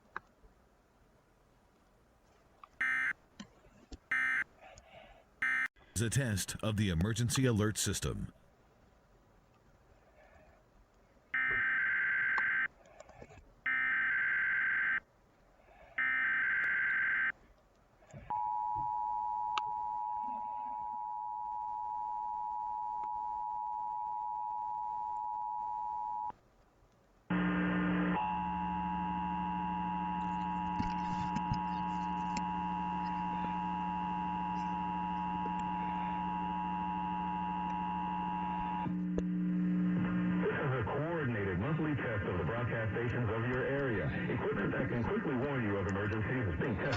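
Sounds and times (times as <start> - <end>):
low hum: 27.0 - 46.9.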